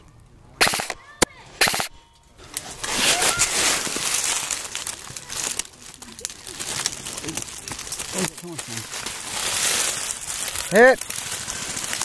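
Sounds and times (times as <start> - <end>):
dry leaves rustling and crunching: 2.4 - 12.0.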